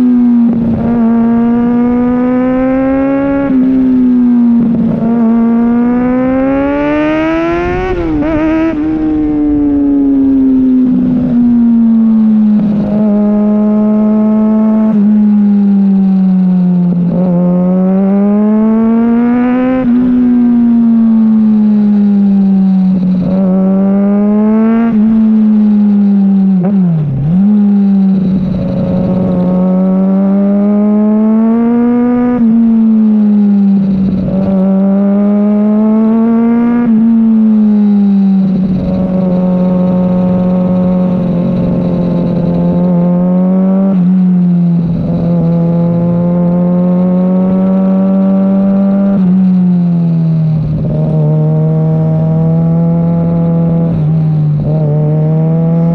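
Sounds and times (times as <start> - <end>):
motorcycle engine revving through gears: 0.0 - 55.9.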